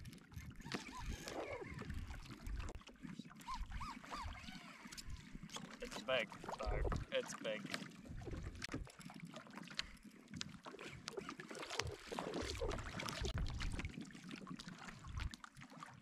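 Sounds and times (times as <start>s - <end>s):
water lapping against kayak hull: 0.0s - 16.0s.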